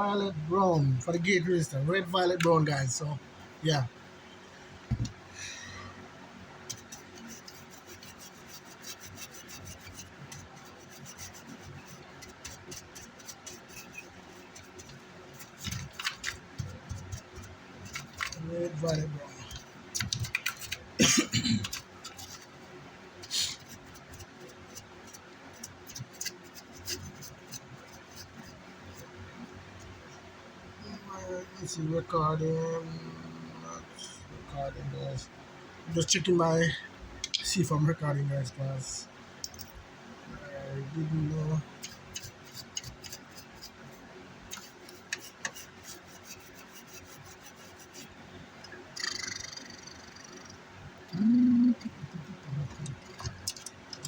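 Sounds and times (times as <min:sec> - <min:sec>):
man coughing: 0:21.0 - 0:21.7.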